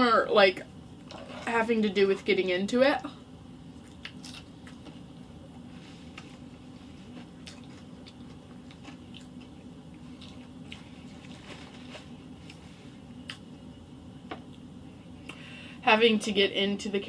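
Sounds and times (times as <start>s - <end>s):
person chewing food: 3.7s - 12.6s.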